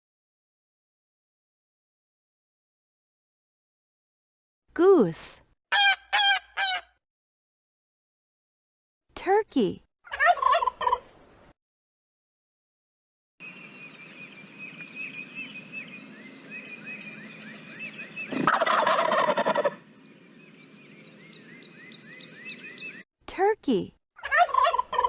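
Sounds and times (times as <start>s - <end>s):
turkey gobbling: 5.7s - 6.9s, 10.1s - 11.1s, 18.3s - 19.8s, 24.2s - 25.0s.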